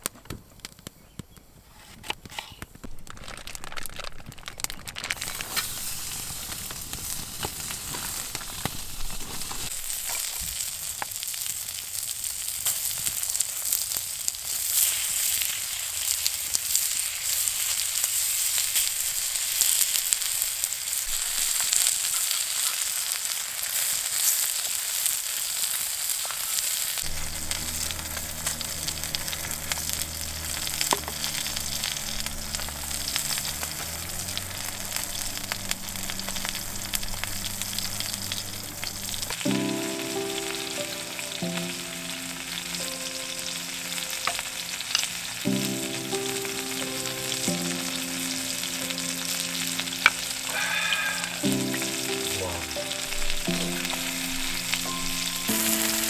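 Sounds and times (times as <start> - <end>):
food sizzling in a pan: 5.2 - 56.0
background music: 27.0 - 56.0.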